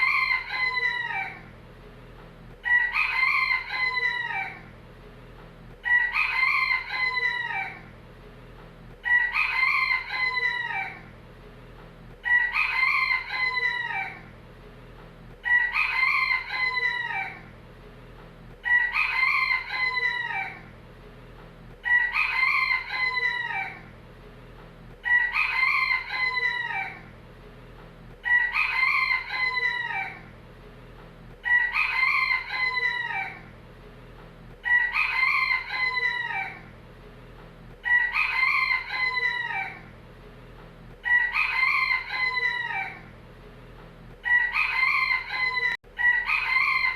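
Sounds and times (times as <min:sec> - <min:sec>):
rooster crowing: 0:00.0 - 0:01.5, 0:02.6 - 0:04.7, 0:05.8 - 0:07.9, 0:09.0 - 0:11.1, 0:12.2 - 0:14.3, 0:15.4 - 0:17.5, 0:18.6 - 0:20.7, 0:21.8 - 0:23.9, 0:25.0 - 0:27.1, 0:28.2 - 0:30.3, 0:31.4 - 0:33.5, 0:34.6 - 0:36.7, 0:37.8 - 0:39.9, 0:41.0 - 0:43.1, 0:44.2 - 0:46.9.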